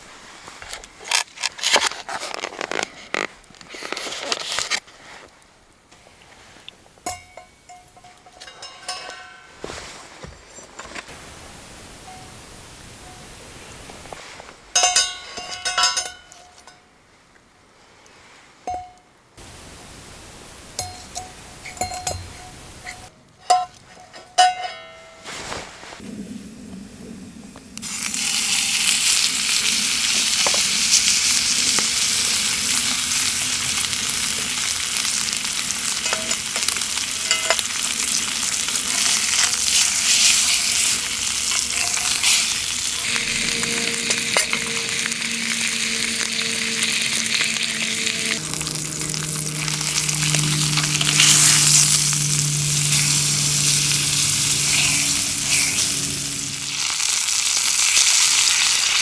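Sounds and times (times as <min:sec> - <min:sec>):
food sizzling in a pan: 0:27.7 - 0:59.0.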